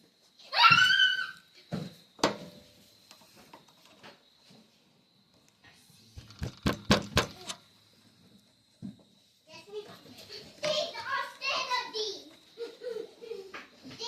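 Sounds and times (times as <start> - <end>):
hard objects knocking: 6.2 - 7.4.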